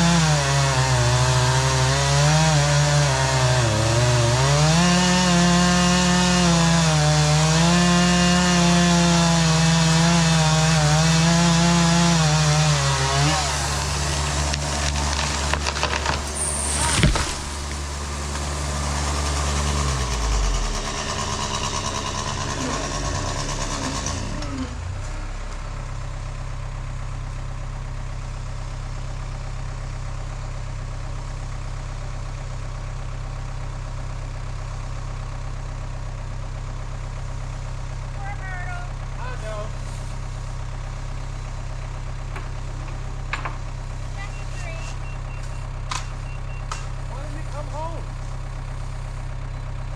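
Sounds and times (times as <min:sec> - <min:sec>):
chainsaw running: 0:00.0 - 0:26.1, 0:35.9 - 0:49.9
sharp crack: 0:13.6 - 0:18.8.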